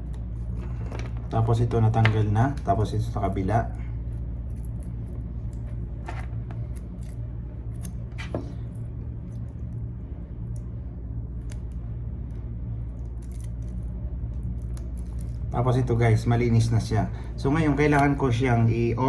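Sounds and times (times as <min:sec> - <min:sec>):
low hum: 0:00.0 - 0:19.0
cable being trimmed and handled: 0:04.5 - 0:08.6.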